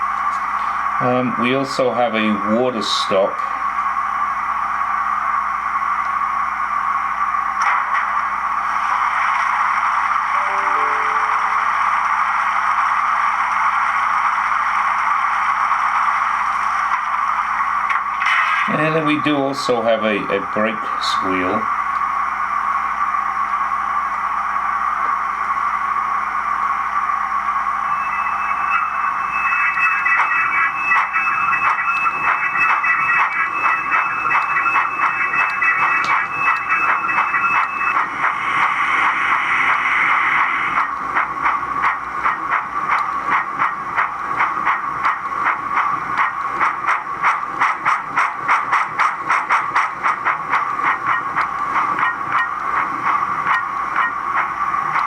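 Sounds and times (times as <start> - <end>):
steam locomotive exhaust chuffs: 0.0 - 55.0
steam hiss: 27.0 - 52.0.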